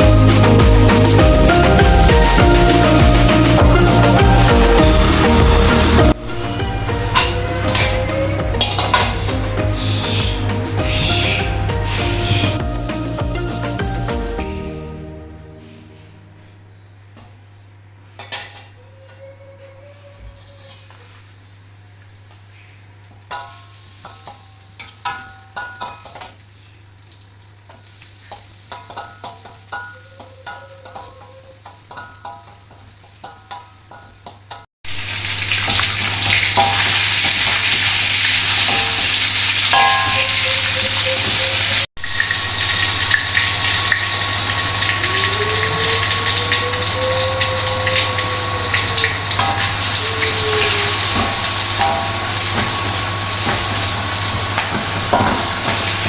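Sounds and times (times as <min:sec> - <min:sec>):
food sizzling in hot oil: 0:00.0 - 0:12.7, 0:20.4 - 0:56.0
utensil clinking and scraping: 0:07.2 - 0:10.2.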